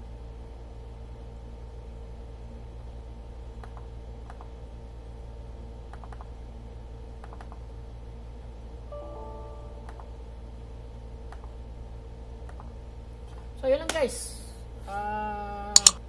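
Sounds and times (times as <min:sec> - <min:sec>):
steady low hum: 0:00.0 - 0:16.0
electronic chime: 0:08.9 - 0:10.4
laptop clicks: 0:15.8 - 0:16.0.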